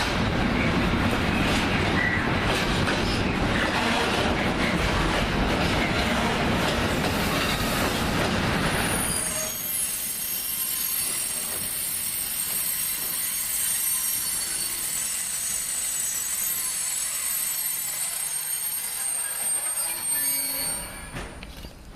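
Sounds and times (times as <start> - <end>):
train wagons rumbling: 0.0 - 21.9
train wheels squealing: 1.8 - 3.8, 7.1 - 21.8.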